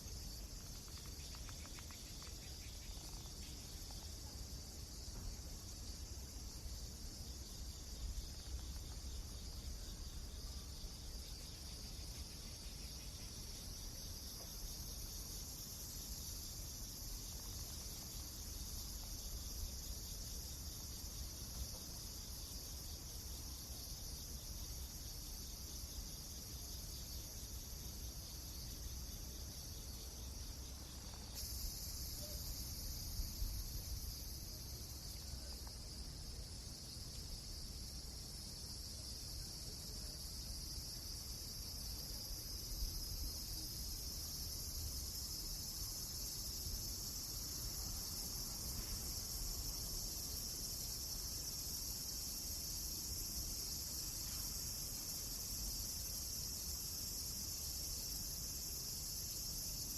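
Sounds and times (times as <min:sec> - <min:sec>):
high-pitched insect chorus: 0:00.0 - 0:59.9.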